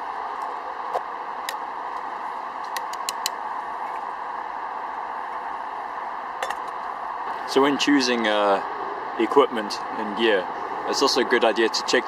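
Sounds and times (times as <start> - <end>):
sharp clicks: 2.7 - 3.4.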